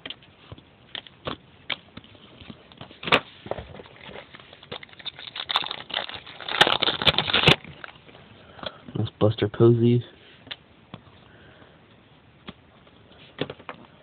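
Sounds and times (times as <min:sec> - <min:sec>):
wrapper crinkling: 0:02.9 - 0:08.1.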